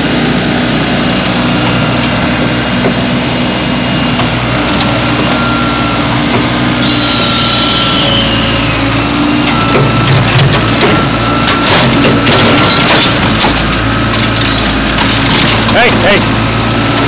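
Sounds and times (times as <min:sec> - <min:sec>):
backhoe engine under load: 0:00.0 - 0:17.0
bucket crunching sheet metal: 0:11.6 - 0:16.4.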